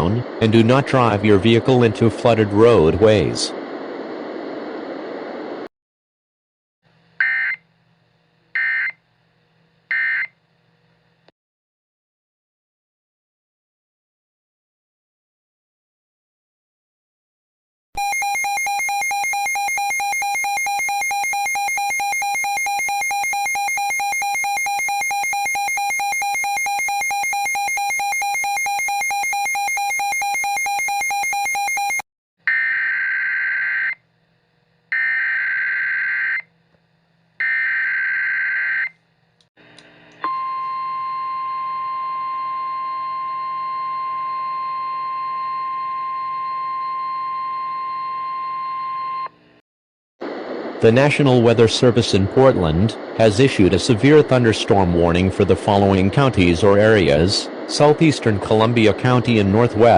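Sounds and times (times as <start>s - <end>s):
weather radio alarm tone: 18.0s - 34.0s, 50.9s - 59.9s.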